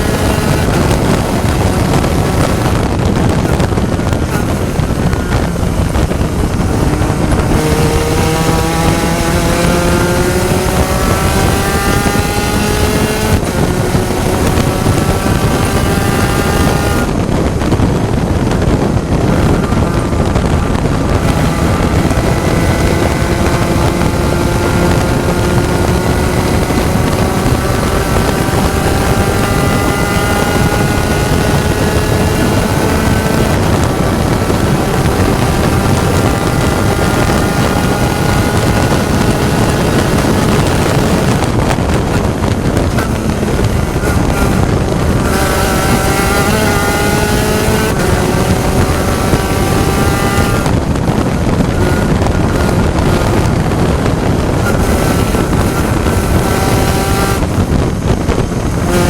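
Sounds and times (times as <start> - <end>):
race car engine accelerating: 0.0 - 59.0
wind and road noise: 0.0 - 59.0.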